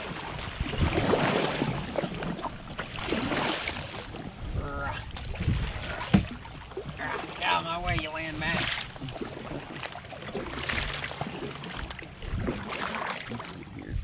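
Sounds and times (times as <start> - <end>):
wind on microphone: 0.0 - 7.0, 12.0 - 13.0
lily pads rustling against hull: 0.0 - 14.0
paddle knocking hull: 0.0 - 14.0
paddle splashes: 0.0 - 14.0.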